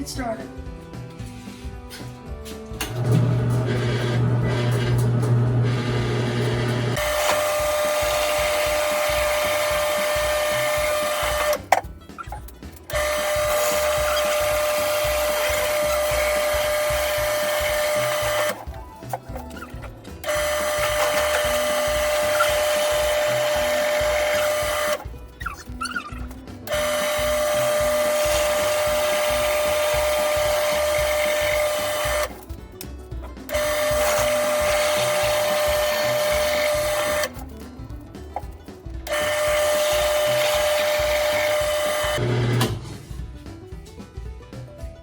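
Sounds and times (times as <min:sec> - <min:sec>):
background music: 0:00.0 - 0:45.0
drill press whining into wood: 0:02.9 - 0:11.7, 0:12.9 - 0:18.7, 0:20.2 - 0:25.0, 0:26.7 - 0:32.3, 0:33.5 - 0:37.4, 0:39.1 - 0:42.8.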